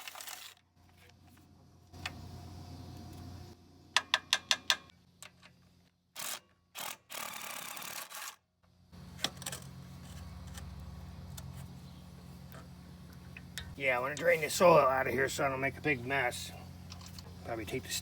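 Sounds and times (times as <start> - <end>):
low steady hum: 0.8 - 4.0, 8.6 - 18.0.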